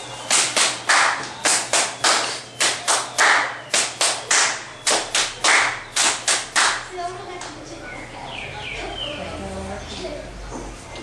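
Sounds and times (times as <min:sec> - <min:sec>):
hands clapping rhythmically: 0:00.2 - 0:07.6.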